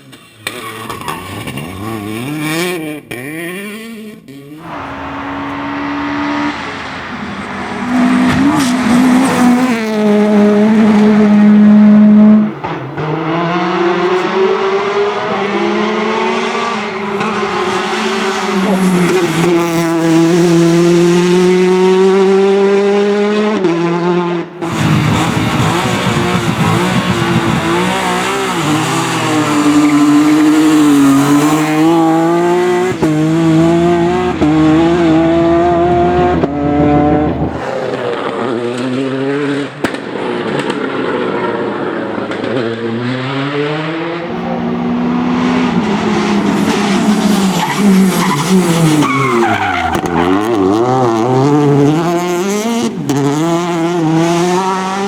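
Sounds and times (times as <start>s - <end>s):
rally car engines revving: 0.0s - 55.0s.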